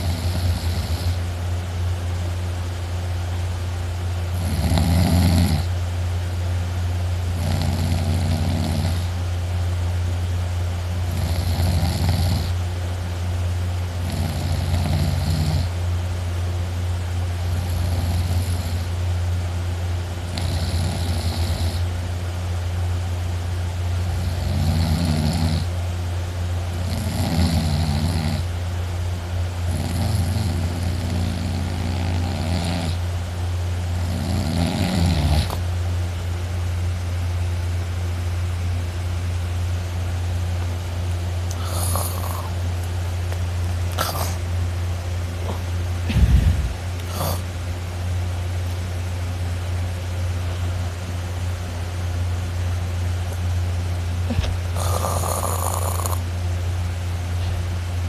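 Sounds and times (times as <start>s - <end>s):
person snoring loudly: 0.0s - 1.2s, 4.3s - 5.7s, 7.3s - 9.2s, 11.1s - 12.6s, 14.0s - 15.7s, 17.5s - 18.9s, 20.3s - 21.9s, 24.1s - 25.7s, 26.8s - 28.5s, 29.7s - 33.0s, 34.0s - 35.6s, 41.5s - 42.6s, 44.0s - 44.4s, 45.4s - 47.5s, 54.3s - 56.3s
steady low hum: 0.0s - 58.0s.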